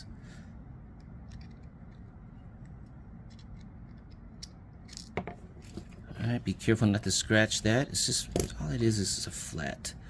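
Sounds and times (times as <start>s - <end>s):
small metal parts clicking: 1.0s - 5.2s.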